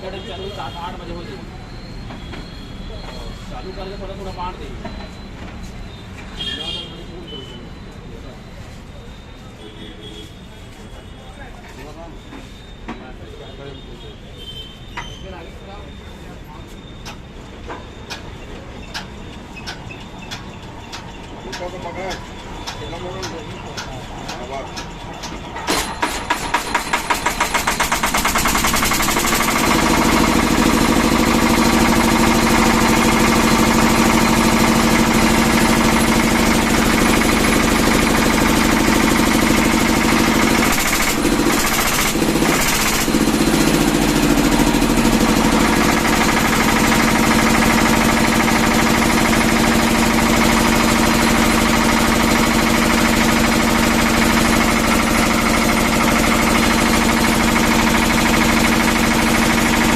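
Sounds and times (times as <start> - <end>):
diesel generator engine running: 16.8 - 59.9.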